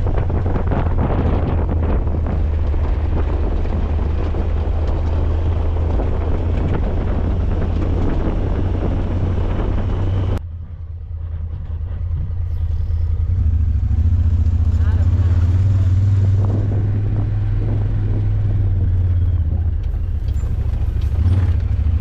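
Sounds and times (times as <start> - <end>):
motorcycle engine running: 0.0 - 22.0
wind noise on microphone: 0.0 - 22.0.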